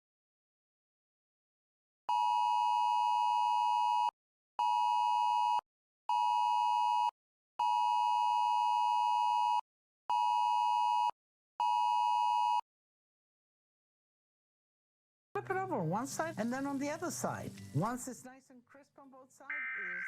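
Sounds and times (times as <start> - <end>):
two-tone alert beeps: 19.5 - 20.0.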